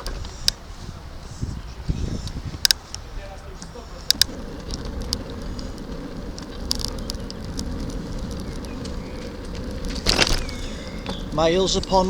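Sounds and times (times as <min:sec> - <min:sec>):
wind on microphone: 0:00.0 - 0:03.3, 0:04.0 - 0:12.0
bicycle tyres rumbling: 0:00.0 - 0:12.0
small ticks: 0:02.2 - 0:03.0, 0:04.0 - 0:12.0.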